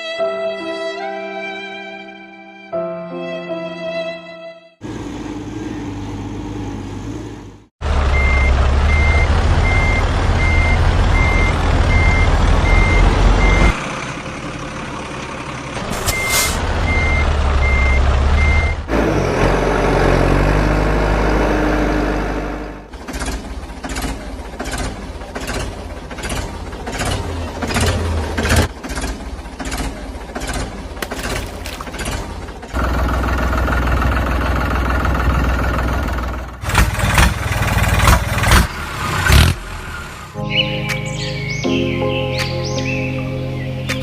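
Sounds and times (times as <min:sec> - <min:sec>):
truck engine running: 0:04.8 - 0:41.6
reversing alarm beeping: 0:08.1 - 0:13.8, 0:16.0 - 0:18.8.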